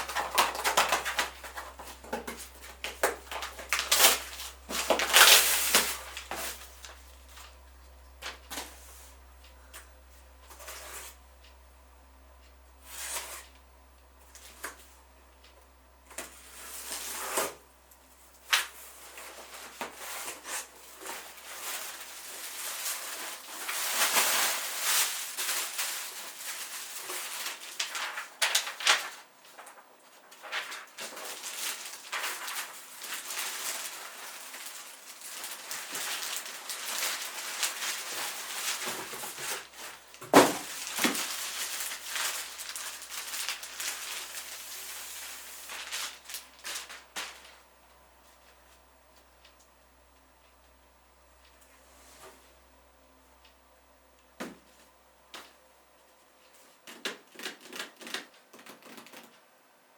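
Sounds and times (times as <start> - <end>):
rustling of boxes and wrapping: 0.0 - 11.2, 16.1 - 49.7.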